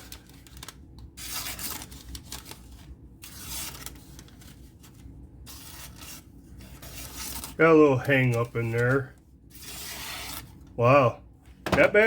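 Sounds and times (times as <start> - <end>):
knife slicing paper: 1.2 - 2.6, 5.4 - 7.6, 8.2 - 10.6.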